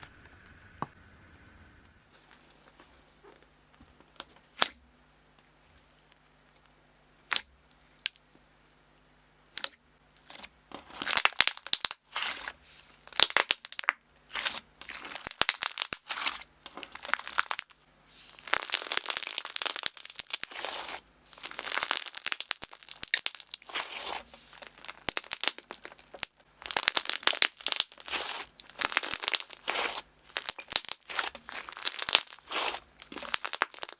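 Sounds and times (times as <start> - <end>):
slime squishing and popping: 9.5 - 12.4, 13.2 - 17.7, 18.4 - 33.9.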